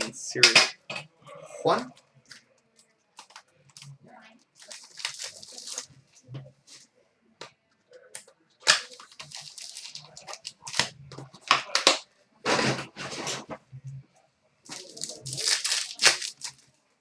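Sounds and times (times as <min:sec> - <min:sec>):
card packs tearing open: 0:04.6 - 0:05.9, 0:08.6 - 0:11.0, 0:14.7 - 0:16.6
foil wrappers crinkling: 0:04.6 - 0:05.9, 0:08.6 - 0:11.0, 0:14.7 - 0:16.6.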